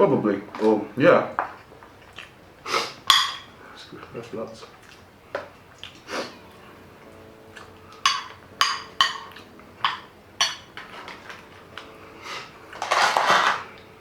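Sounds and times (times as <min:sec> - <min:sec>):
cutlery clinking against dishes: 0:03.0 - 0:03.6, 0:07.6 - 0:13.9
scraping or rustling noise: 0:12.7 - 0:13.7.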